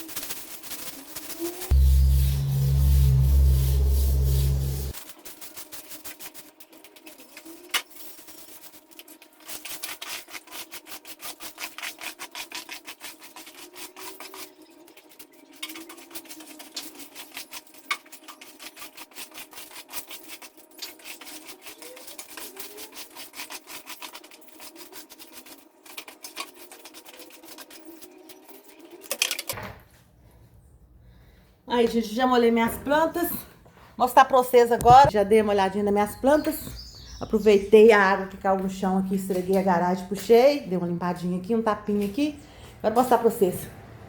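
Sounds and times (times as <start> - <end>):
stiff broom scrubbing wet concrete: 0.2 - 6.6, 15.8 - 28.1.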